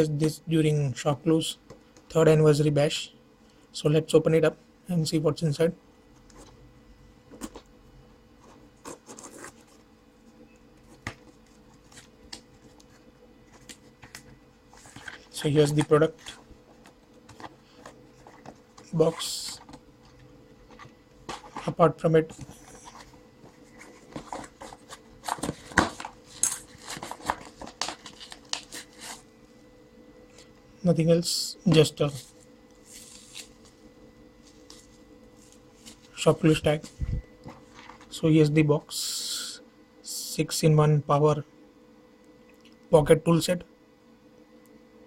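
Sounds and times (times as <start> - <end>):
packaging rustling and clicking: 11.0 - 29.2.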